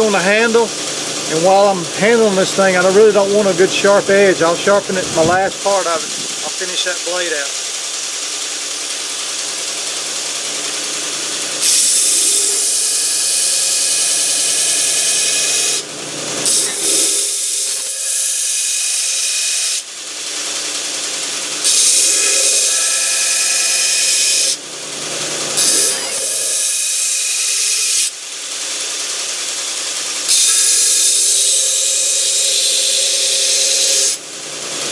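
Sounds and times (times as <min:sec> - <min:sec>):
belt sander running: 0:00.0 - 0:19.5, 0:20.6 - 0:28.0, 0:28.8 - 0:34.9
blade grinding on belt: 0:11.1 - 0:19.8, 0:21.1 - 0:28.1, 0:30.1 - 0:34.2.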